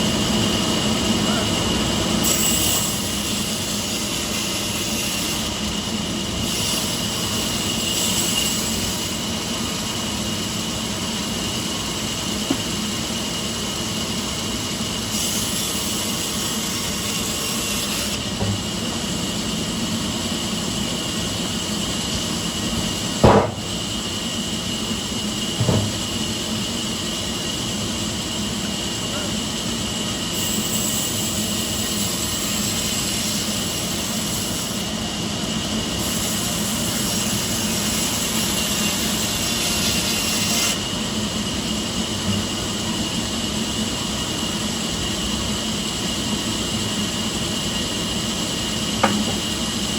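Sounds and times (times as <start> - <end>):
sawmill machinery whining: 0.0 - 49.9
small knock: 23.2 - 23.7, 25.6 - 26.0, 49.0 - 49.4
sharp thump: 23.2 - 23.8, 25.6 - 26.0.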